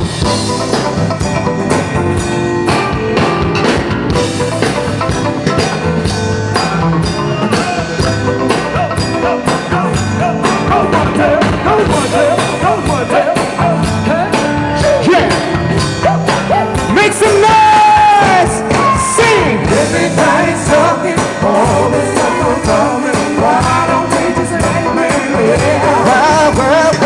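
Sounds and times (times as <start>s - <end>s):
drums keeping a beat: 0.0s - 27.0s
live band music: 0.0s - 27.0s
person singing: 5.5s - 27.0s.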